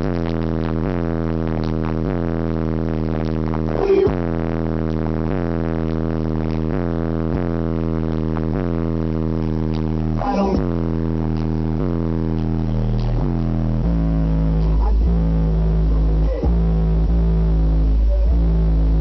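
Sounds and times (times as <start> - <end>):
bass-heavy hip-hop through car stereo: 0.0 - 19.0.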